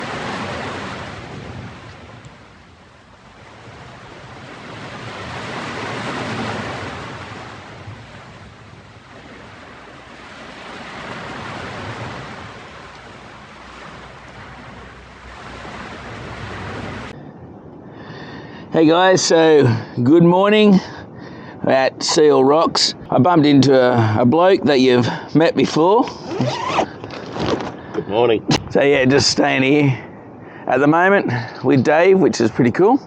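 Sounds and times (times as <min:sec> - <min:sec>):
ocean surf breaking: 0:00.0 - 0:17.6.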